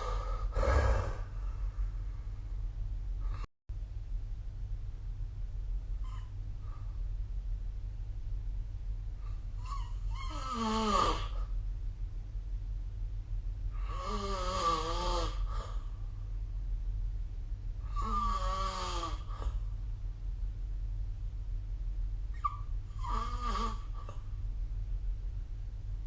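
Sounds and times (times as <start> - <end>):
person snoring: 0.0 - 1.4, 9.6 - 11.4, 13.8 - 15.8, 17.9 - 19.6, 23.0 - 24.2
steady low hum: 0.0 - 26.0.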